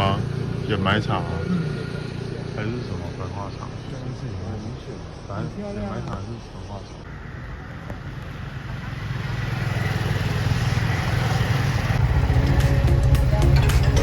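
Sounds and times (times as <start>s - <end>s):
road and wind noise: 0.0s - 14.0s
road vehicle running: 0.0s - 14.0s
background music: 12.0s - 14.0s.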